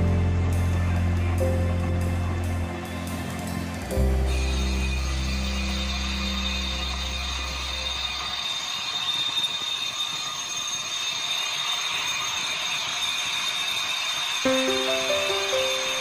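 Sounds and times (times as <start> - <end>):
background music: 0.0 - 8.2, 14.5 - 16.0
metal lathe whining: 0.2 - 16.0.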